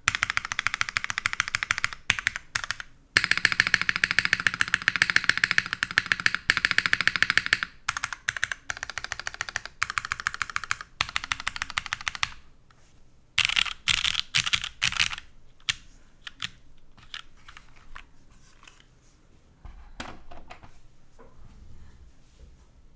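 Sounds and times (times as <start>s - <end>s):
mechanical keyboard typing: 0.0s - 12.4s, 13.4s - 18.0s.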